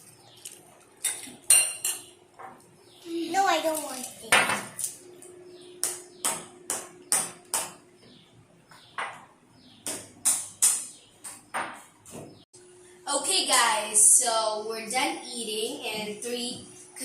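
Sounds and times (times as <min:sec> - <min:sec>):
cutlery and dishes clinking: 0:00.4 - 0:02.1.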